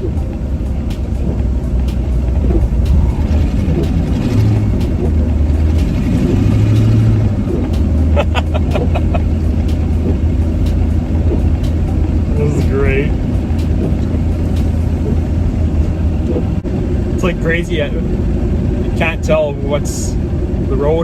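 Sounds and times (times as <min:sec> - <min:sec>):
car engine under throttle: 0:00.0 - 0:21.0.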